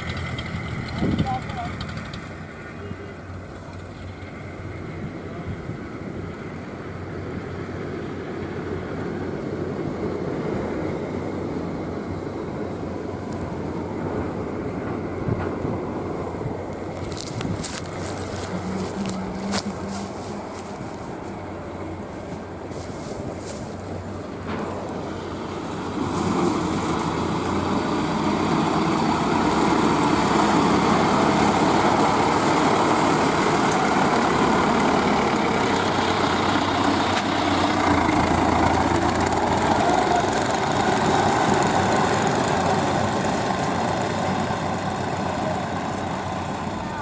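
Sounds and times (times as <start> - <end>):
tractor engine running: 0.0 - 47.0.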